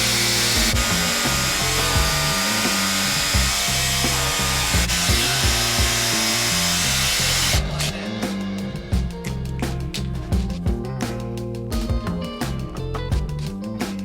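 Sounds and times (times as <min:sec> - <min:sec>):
power grinder grinding metal: 0:00.0 - 0:08.0
background music with beat: 0:00.0 - 0:14.0.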